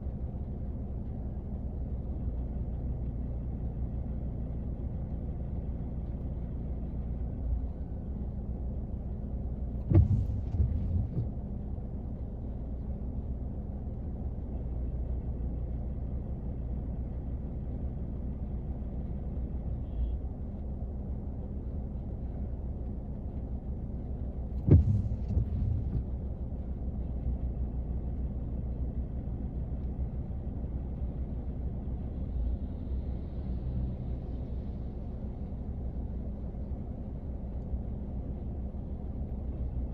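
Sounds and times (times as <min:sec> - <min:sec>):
rain on a car roof: 0:00.2 - 0:19.6, 0:20.4 - 0:39.9
heavy thuds: 0:09.8 - 0:11.4, 0:24.6 - 0:26.2
knock on a car: 0:24.6 - 0:26.1.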